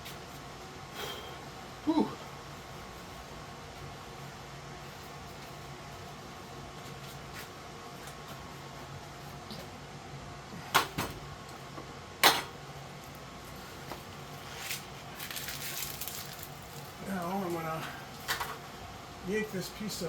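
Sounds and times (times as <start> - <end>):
steady low hum: 0.0 - 20.0
sharp knocks of vent parts: 10.7 - 12.6.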